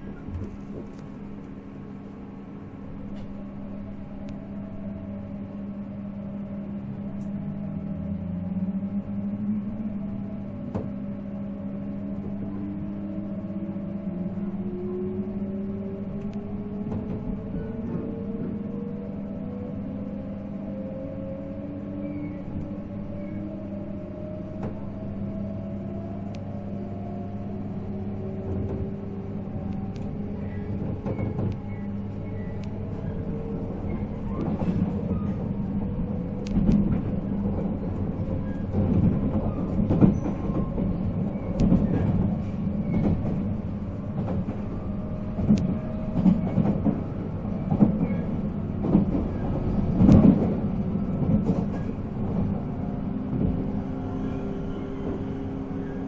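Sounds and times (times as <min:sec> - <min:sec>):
wheel and rail rumble: 0:00.0 - 0:56.0
clicks and knocks from track: 0:38.7 - 0:43.5, 0:47.7 - 0:52.6.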